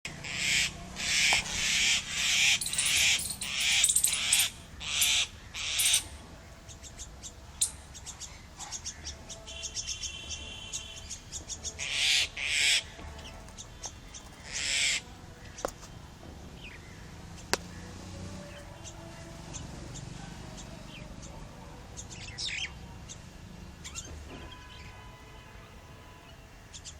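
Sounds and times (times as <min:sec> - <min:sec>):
birds rasping calls: 0:02.6 - 0:06.1.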